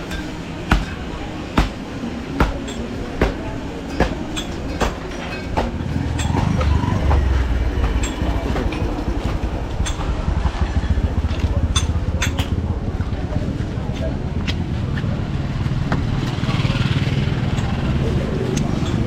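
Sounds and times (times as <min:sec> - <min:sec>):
heavy vehicle rumbling past: 0:05.7 - 0:13.8.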